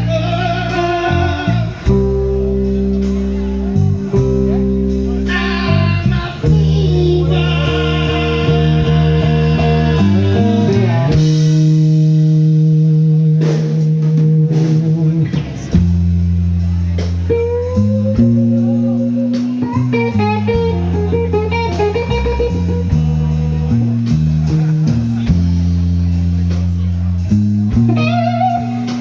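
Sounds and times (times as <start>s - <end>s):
bass guitar: 0.0s - 29.0s
drums: 0.0s - 29.0s
electric guitar held notes: 0.0s - 29.0s.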